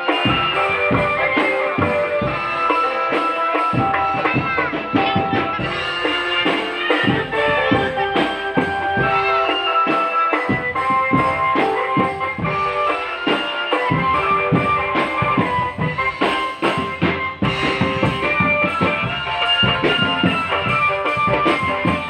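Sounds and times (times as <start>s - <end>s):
marching drum band playing: 0.0s - 22.0s.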